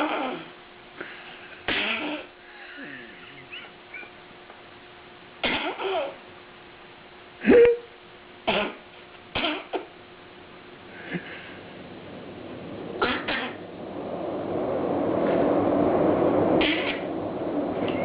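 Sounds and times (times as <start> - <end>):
hoarse cough-like vocal noises: 1.6 - 3.5, 5.4 - 6.2, 8.5 - 9.9.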